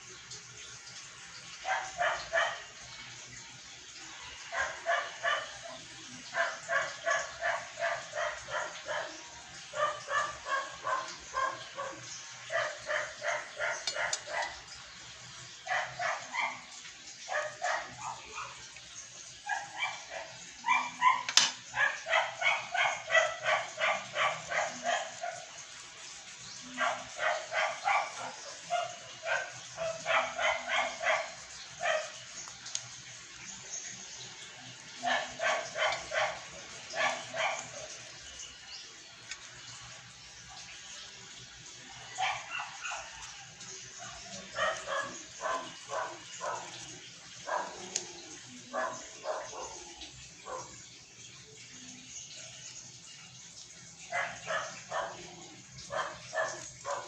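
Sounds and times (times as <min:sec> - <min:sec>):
dog barking: 0:01.6 - 0:02.8, 0:04.5 - 0:14.7, 0:15.6 - 0:18.7, 0:19.4 - 0:25.7, 0:26.6 - 0:32.4, 0:34.9 - 0:38.1, 0:42.1 - 0:50.8, 0:54.0 - 0:57.0.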